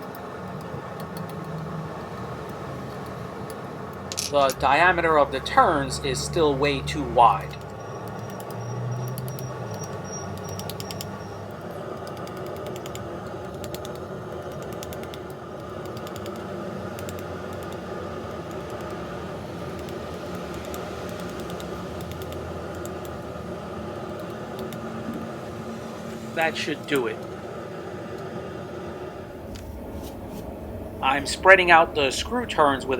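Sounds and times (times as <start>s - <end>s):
forge blower rushing: 15.3s - 32.9s.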